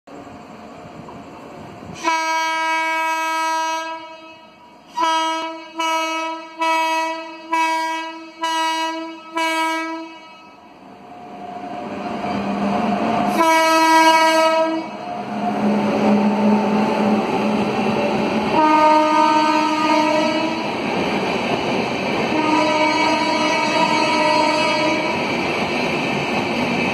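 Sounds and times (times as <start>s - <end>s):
train passing: 0.1s - 26.9s
locomotive horn blasts: 2.0s - 10.6s, 13.3s - 15.0s, 18.6s - 20.6s, 22.3s - 25.1s.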